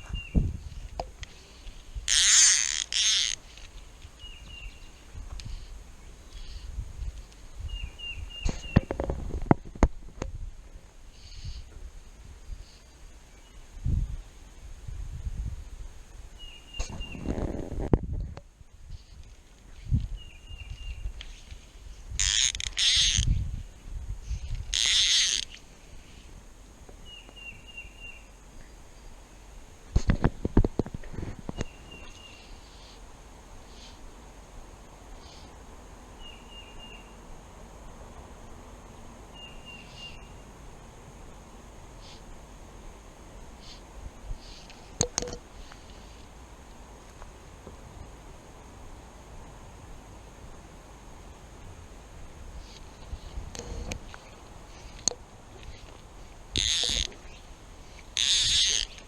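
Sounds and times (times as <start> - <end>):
small birds chirping: 0.0 - 8.9, 16.4 - 17.3, 31.5 - 34.2, 39.2 - 40.7.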